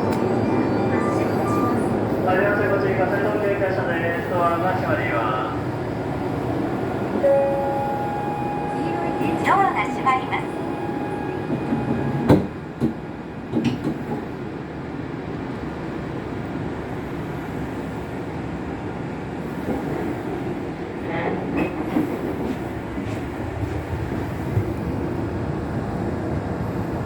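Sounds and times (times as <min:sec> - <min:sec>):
train rumbling: 0:00.0 - 0:27.0
train doors thumping shut: 0:11.4 - 0:14.3.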